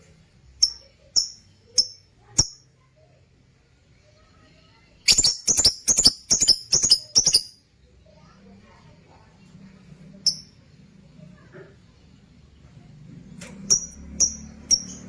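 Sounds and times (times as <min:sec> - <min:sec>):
lovebirds chirping: 0:00.6 - 0:02.6, 0:05.1 - 0:07.6, 0:13.7 - 0:15.0
harsh shrill bird calls: 0:05.1 - 0:07.6.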